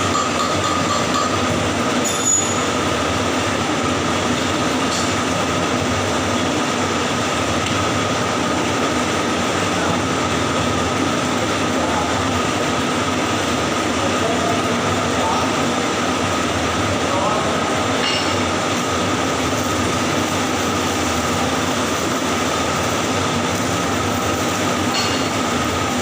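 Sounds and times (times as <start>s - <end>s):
welding arc crackling hiss: 17.7s - 26.0s.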